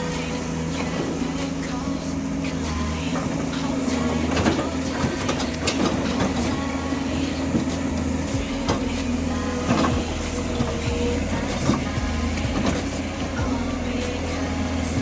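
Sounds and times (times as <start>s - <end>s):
excavator diesel engine running: 0.0s - 15.0s
metallic clanks and knocks: 3.1s - 15.0s.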